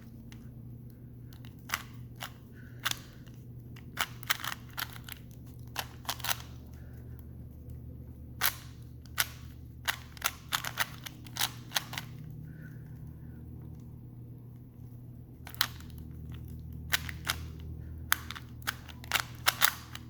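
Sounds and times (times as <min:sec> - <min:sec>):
steady low hum: 0:00.0 - 0:20.0
puzzle cube layers clicking: 0:18.2 - 0:20.0.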